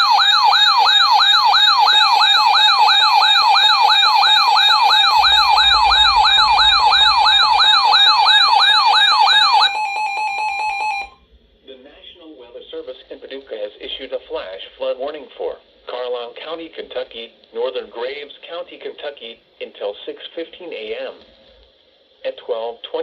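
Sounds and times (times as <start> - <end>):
sweeping electronic siren tone: 0.0 - 11.2
steady alert tone: 2.6 - 11.2.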